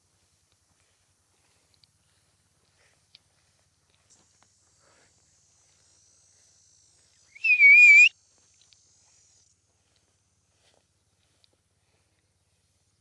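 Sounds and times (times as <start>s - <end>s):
dog whistle trilling blast: 7.4s - 8.1s.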